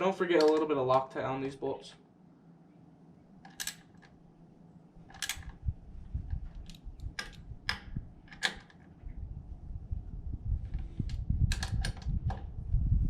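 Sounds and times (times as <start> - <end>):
low rumble: 5.0 - 8.4, 9.0 - 13.0.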